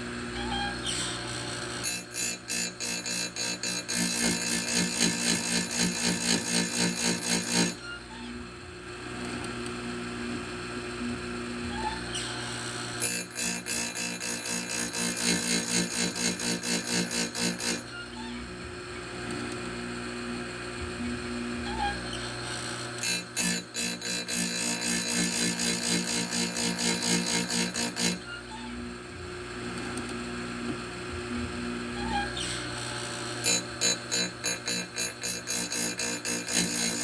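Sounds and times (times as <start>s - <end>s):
grinder motor humming: 0.0s - 37.0s
stone grinding chain teeth: 1.8s - 7.8s, 13.0s - 17.8s, 23.0s - 28.2s, 33.4s - 37.0s.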